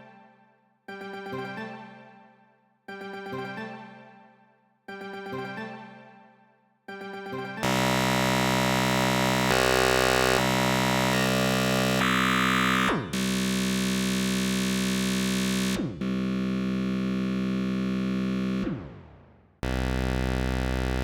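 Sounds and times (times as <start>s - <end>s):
dense synthesizer chords: 7.6s - 21.0s.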